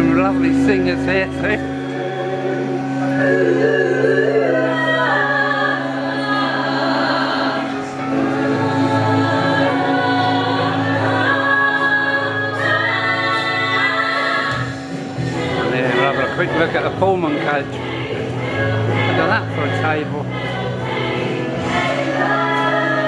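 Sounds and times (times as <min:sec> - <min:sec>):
group of singers holding notes: 0:00.0 - 0:23.0
steady low hum: 0:00.0 - 0:23.0.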